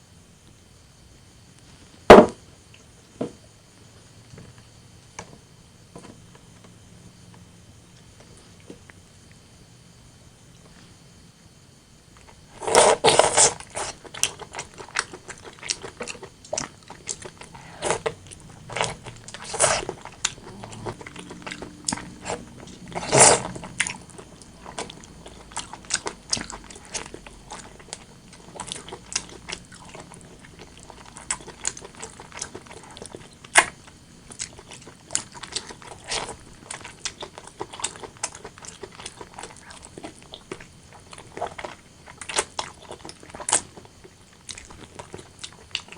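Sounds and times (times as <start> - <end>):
chewing and biting food: 12.2 - 45.9.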